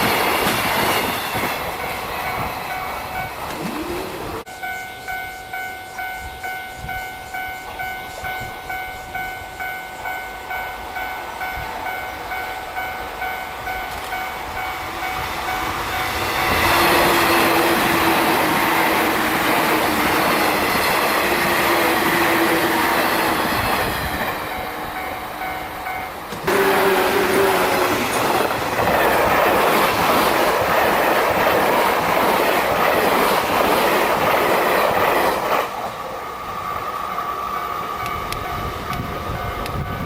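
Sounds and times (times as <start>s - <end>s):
train wheels on rails: 0.0s - 40.0s
level crossing bell ringing: 24.4s - 28.2s.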